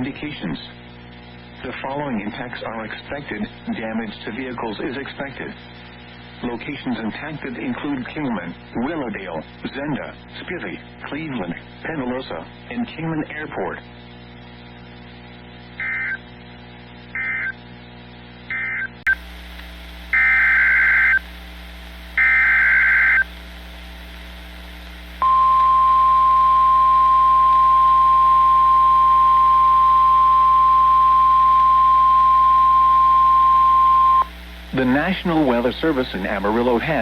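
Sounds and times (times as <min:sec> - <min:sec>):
short digital data bursts: 0:20.1 - 0:21.2, 0:22.2 - 0:23.3
steady warning alarm tone: 0:20.1 - 0:21.2, 0:22.2 - 0:23.3, 0:25.2 - 0:34.3.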